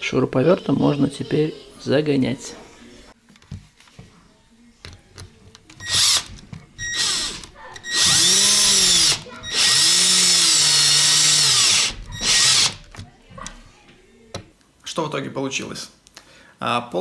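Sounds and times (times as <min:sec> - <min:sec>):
drill driving screws into wood: 0:05.8 - 0:13.0.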